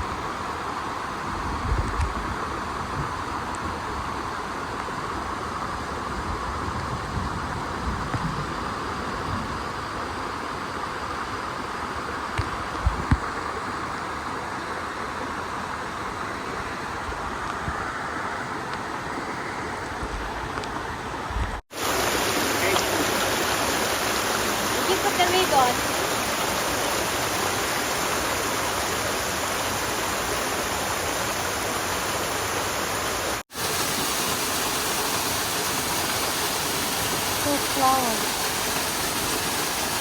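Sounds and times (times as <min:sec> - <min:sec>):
wind buffeting microphone: 0:01.3 - 0:04.0, 0:06.0 - 0:09.8
stream water flowing: 0:08.5 - 0:40.0.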